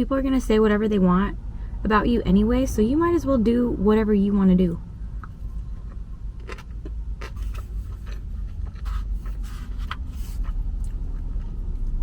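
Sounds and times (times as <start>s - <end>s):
chewing: 5.2s - 12.0s.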